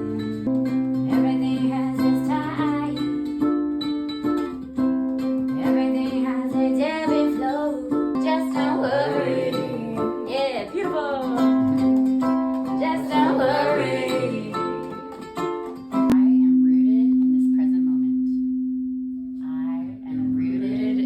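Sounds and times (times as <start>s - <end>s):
person singing: 0.0s - 3.1s, 5.5s - 12.0s, 12.7s - 15.1s
plucked strings: 0.0s - 18.0s
singing bowl ringing: 16.2s - 19.5s.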